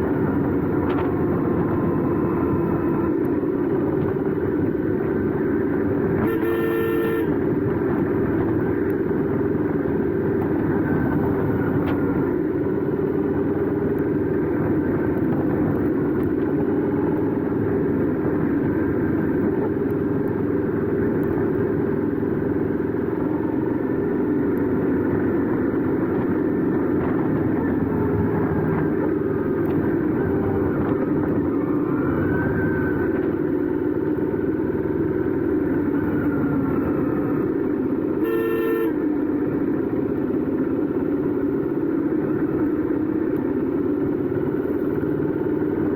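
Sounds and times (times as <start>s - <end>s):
motorcycle engine running: 0.0s - 31.9s, 37.4s - 45.9s
horn honking: 6.1s - 7.6s, 38.1s - 39.2s.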